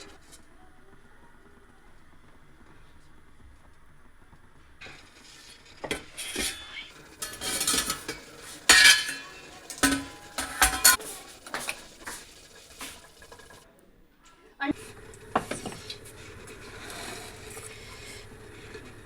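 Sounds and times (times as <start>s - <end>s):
utensils clinking against dishes: 4.8s - 13.6s.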